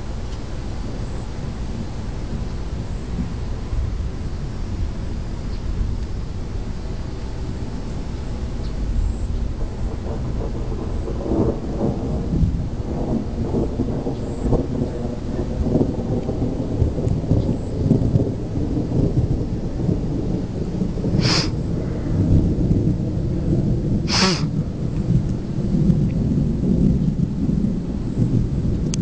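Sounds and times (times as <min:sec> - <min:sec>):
rain: 0:00.0 - 0:29.0
thunder rumbling: 0:00.0 - 0:29.0
brief high hisses: 0:21.2 - 0:21.5, 0:24.1 - 0:24.5.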